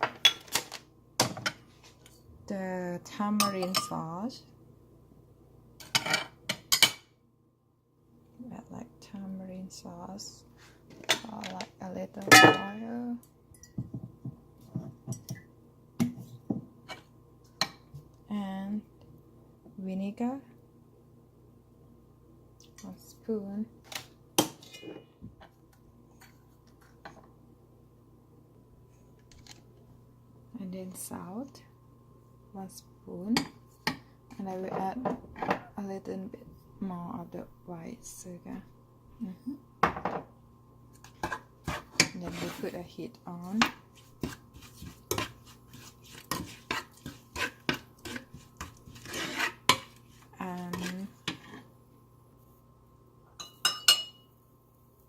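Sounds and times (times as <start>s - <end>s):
low steady hum: 0.0s - 55.0s
utensils clinking against pot: 3.4s - 4.0s, 53.4s - 54.2s.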